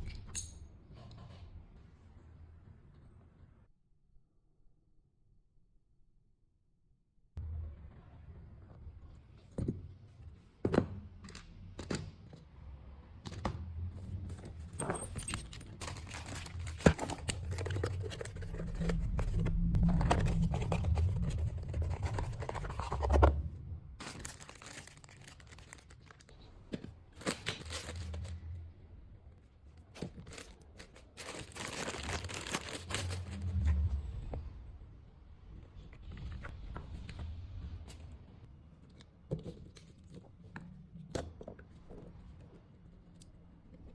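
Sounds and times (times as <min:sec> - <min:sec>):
tools being handled: 0:14.2 - 0:19.0, 0:24.0 - 0:28.4.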